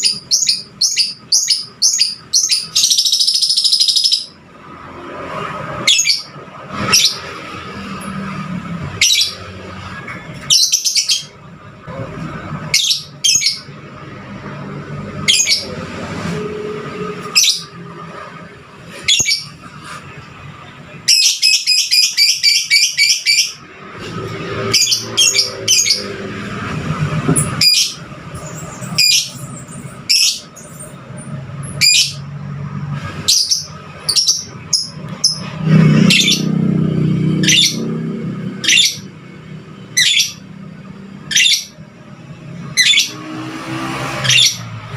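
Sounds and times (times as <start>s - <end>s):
bird chirping: 0.0s - 4.4s, 5.8s - 7.4s, 8.9s - 9.5s, 10.4s - 11.4s, 12.7s - 13.8s, 15.2s - 15.8s, 17.2s - 17.8s, 19.0s - 19.6s, 21.0s - 23.6s, 24.6s - 26.2s, 27.4s - 32.3s, 33.2s - 36.6s, 37.3s - 37.9s, 38.6s - 39.1s, 39.9s - 40.5s, 41.2s - 41.8s, 42.6s - 43.3s, 44.2s - 44.8s.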